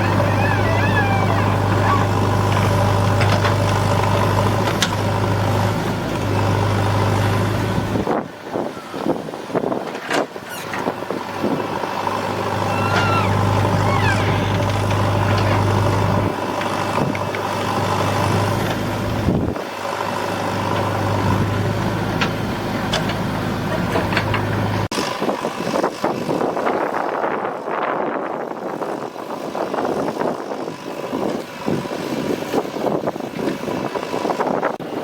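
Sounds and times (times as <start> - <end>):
diesel engine humming: 0.0 - 9.8, 10.7 - 26.6.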